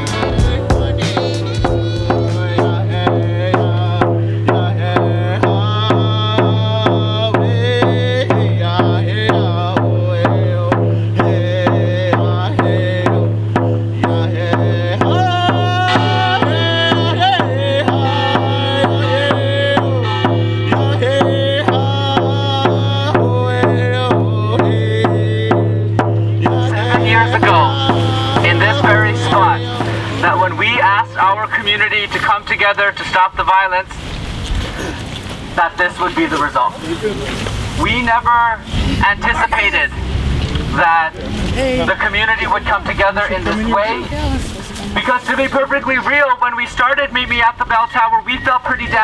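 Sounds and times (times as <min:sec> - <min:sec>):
steady drum beat: 0:00.0 - 0:31.9, 0:37.8 - 0:45.2
wavering melody: 0:25.9 - 0:32.0
sustained low drone: 0:26.2 - 0:31.5.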